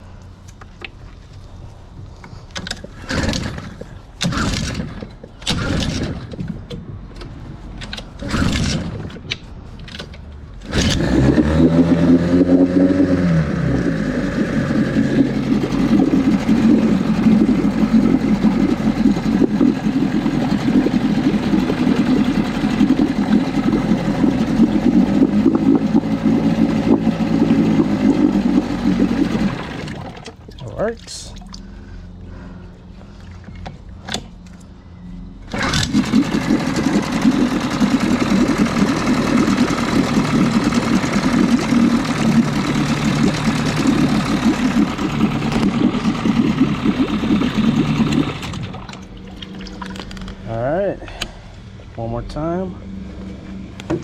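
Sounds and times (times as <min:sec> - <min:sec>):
outboard motor pull-start cranking: 0:02.5 - 0:30.6, 0:35.5 - 0:50.4
outboard engine revving and idling: 0:02.8 - 0:06.7, 0:08.1 - 0:09.3, 0:10.6 - 0:31.0, 0:35.5 - 0:54.0.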